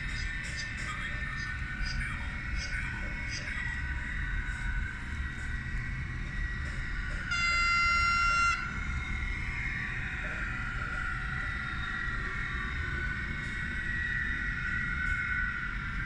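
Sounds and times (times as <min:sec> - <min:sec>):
high-pitched running hum: 0:00.0 - 0:16.0
model train horn: 0:07.3 - 0:08.7.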